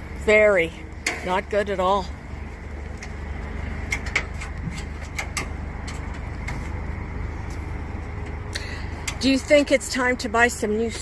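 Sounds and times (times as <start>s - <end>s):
vehicle engine idling: 0.0s - 11.0s
light clicks and knocks: 2.9s - 6.8s.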